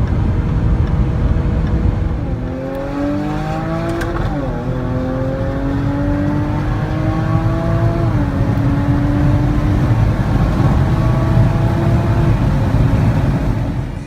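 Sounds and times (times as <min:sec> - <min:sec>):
car engine accelerating hard: 0:00.0 - 0:14.0.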